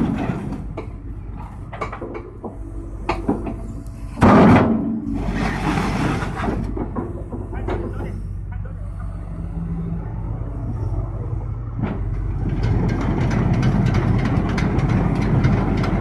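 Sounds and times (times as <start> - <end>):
excavator diesel engine running: 0.0 - 16.0
rapid clattering: 11.8 - 16.0.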